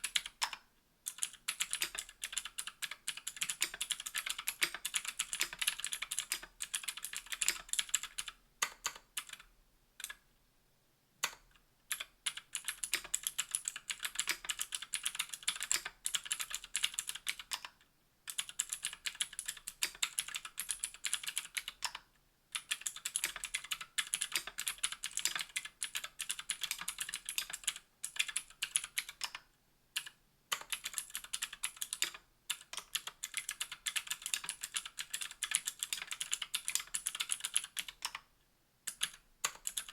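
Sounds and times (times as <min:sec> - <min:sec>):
clicky keyboard typing: 0:00.0 - 0:10.2, 0:11.2 - 0:38.2, 0:38.9 - 0:39.9.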